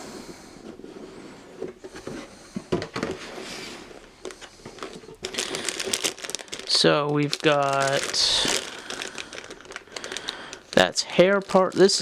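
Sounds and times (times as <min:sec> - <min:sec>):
plastic bags rustling: 0:03.0 - 0:12.0.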